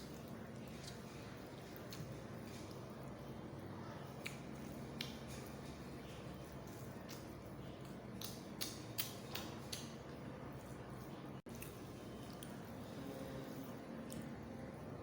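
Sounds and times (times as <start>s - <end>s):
person chewing food: 0.0s - 14.8s
wet mouth clicks and smacks: 7.0s - 10.0s.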